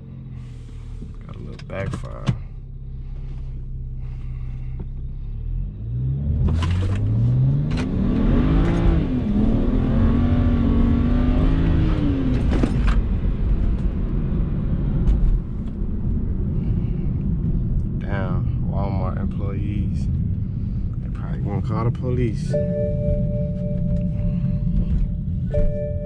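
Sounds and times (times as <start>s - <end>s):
car engine revving hard: 5.6s - 12.5s.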